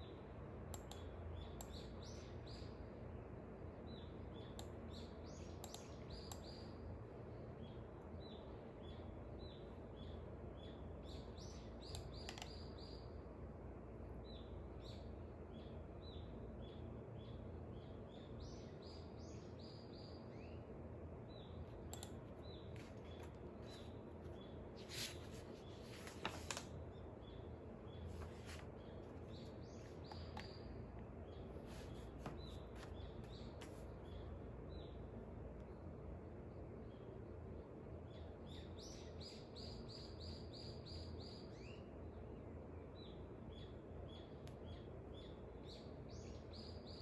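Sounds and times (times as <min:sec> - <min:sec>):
small birds chirping: 0:00.0 - 0:47.0
faint clicks: 0:00.7 - 0:01.8, 0:21.9 - 0:22.3.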